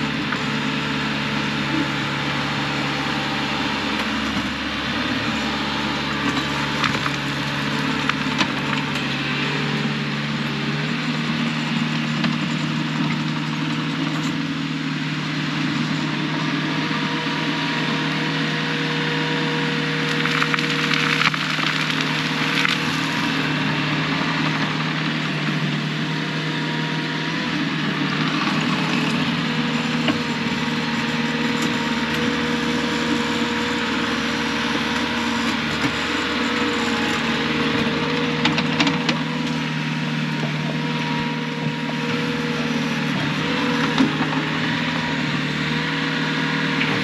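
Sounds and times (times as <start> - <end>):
diesel engine running: 0.0 - 47.0
crackling and crunching: 20.1 - 23.0.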